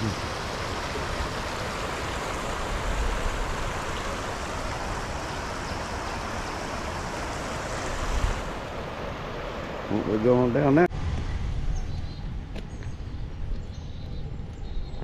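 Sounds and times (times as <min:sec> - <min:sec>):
floodwater rushing: 0:00.0 - 0:10.9.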